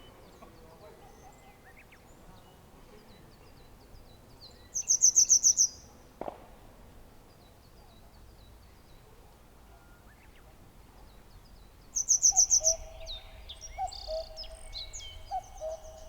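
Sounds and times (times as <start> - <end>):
songbird call with high notes: 12.0 - 16.0.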